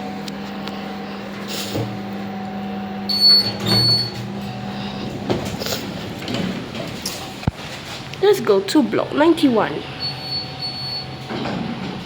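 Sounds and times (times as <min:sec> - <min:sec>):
lift car hum: 0:00.0 - 0:12.0
short electronic beeps: 0:03.1 - 0:04.2, 0:10.0 - 0:11.1
lift doors sliding open: 0:03.1 - 0:08.0, 0:09.8 - 0:12.0.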